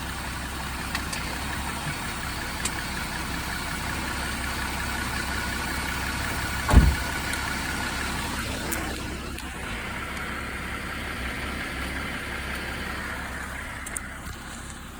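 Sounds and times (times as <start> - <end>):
car engine running: 0.0 - 14.9
low thump: 6.7 - 7.2.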